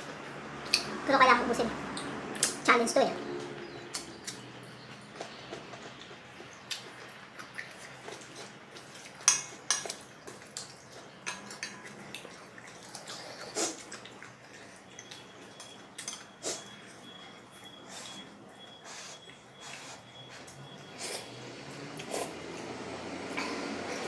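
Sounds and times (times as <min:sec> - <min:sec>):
utensils clinking against a bowl: 0:06.8 - 0:21.3.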